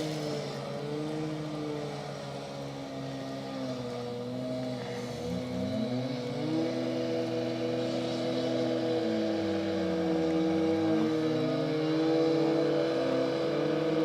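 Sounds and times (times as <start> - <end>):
large engine running: 0.0 - 14.0.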